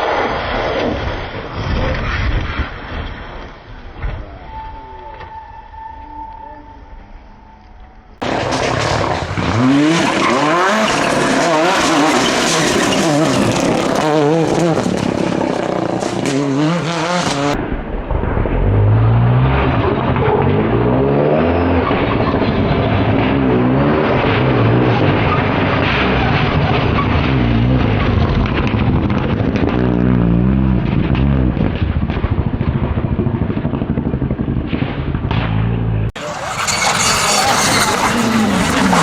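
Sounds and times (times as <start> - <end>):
rally car engine revving: 8.2 - 39.0
tyre noise: 33.0 - 39.0.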